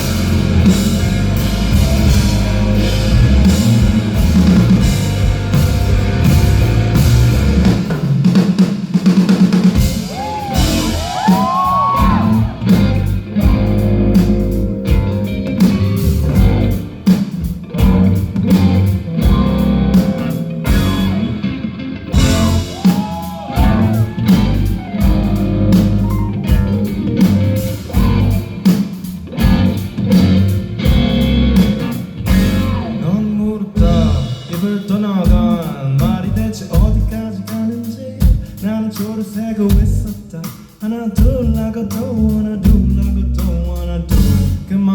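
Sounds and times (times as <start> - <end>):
electric guitar bending high lines: 0.0 - 8.4, 9.7 - 33.2
rock band playing: 0.0 - 44.9.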